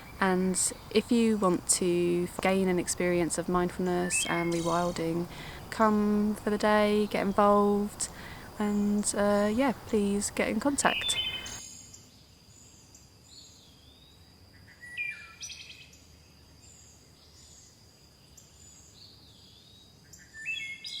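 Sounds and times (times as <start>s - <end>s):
birds chirping: 0.0s - 11.6s.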